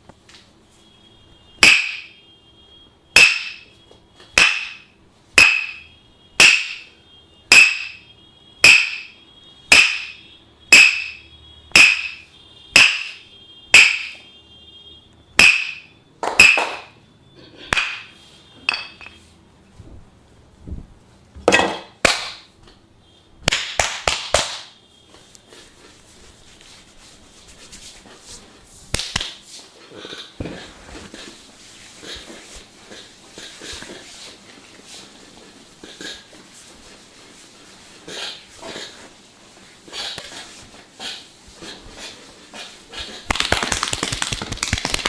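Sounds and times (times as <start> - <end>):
wooden mallet knocking on wood: 1.6 - 2.1, 3.2 - 3.6, 5.4 - 5.8, 6.4 - 6.9, 8.6 - 9.1, 9.7 - 11.2, 11.8 - 12.2, 12.8 - 13.2, 13.8 - 14.2, 15.4 - 16.9.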